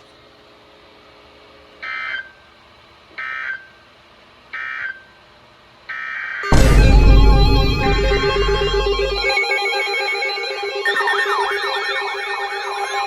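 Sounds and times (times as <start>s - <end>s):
loud alert tone: 6.4s - 13.0s.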